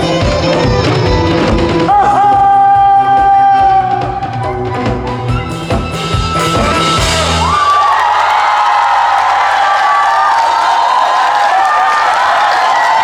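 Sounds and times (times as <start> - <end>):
live band playing: 0.0 - 8.1.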